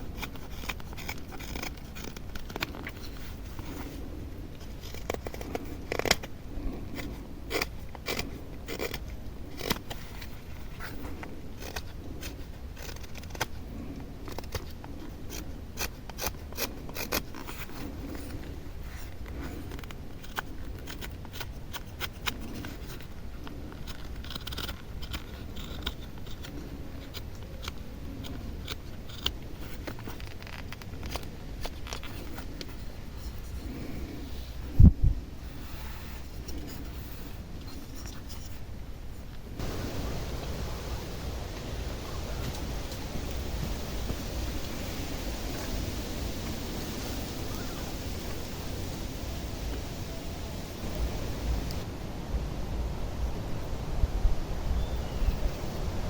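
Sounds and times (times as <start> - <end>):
knife carving wood: 0.0 - 34.7.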